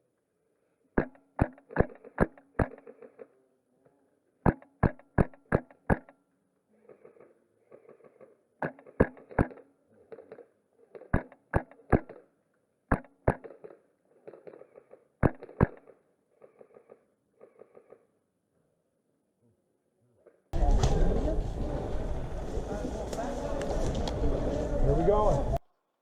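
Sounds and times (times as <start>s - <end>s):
airsoft rifle shots cracking: 15.2s - 15.9s
faint crackling and rustling: 20.2s - 25.6s.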